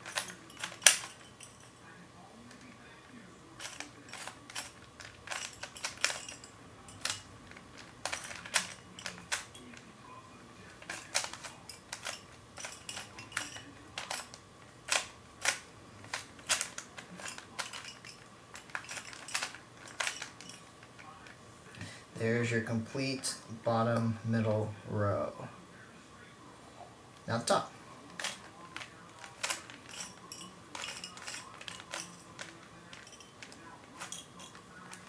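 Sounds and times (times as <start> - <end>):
puzzle cube plastic clicks: 3.6 - 6.4, 7.0 - 9.8, 10.7 - 21.4, 28.1 - 35.0.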